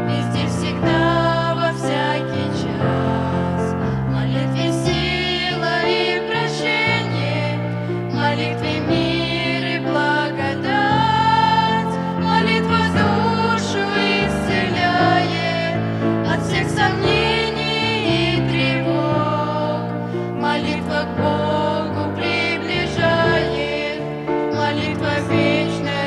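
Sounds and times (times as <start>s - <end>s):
hymn singing: 0.0s - 26.0s.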